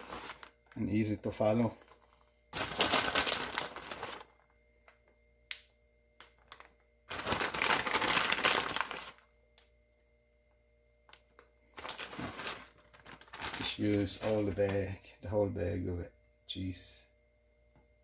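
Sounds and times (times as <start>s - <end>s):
plastic bag crinkling: 0.0s - 4.5s, 6.4s - 9.3s, 11.7s - 14.9s.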